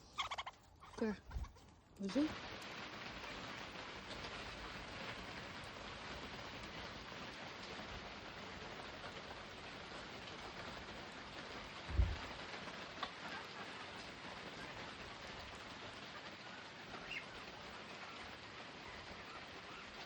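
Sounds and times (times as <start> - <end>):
dull low thump: 11.9 - 12.3.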